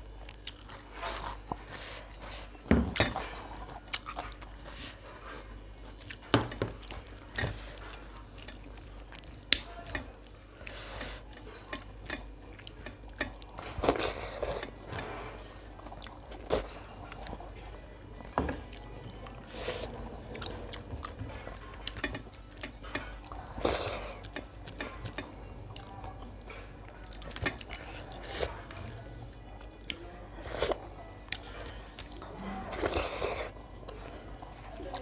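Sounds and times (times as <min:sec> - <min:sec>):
wet chewing: 0:00.0 - 0:35.0.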